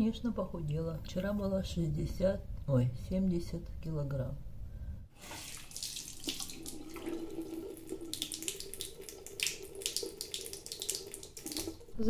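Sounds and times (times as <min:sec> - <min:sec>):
tap water running into sink: 0:05.2 - 0:12.0
water splashing: 0:05.2 - 0:12.0.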